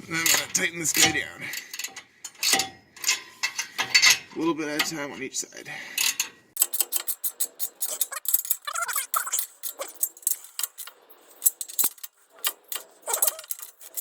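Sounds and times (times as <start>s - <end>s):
metal clinks: 6.6s - 14.0s
socket ratchet clicking: 6.6s - 14.0s.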